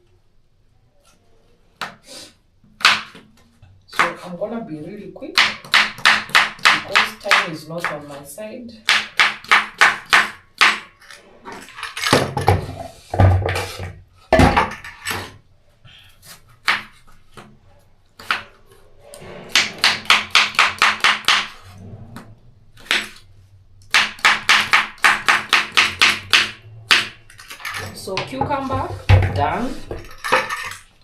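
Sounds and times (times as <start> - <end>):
knife chopping on cutting board: 23.9 - 27.2.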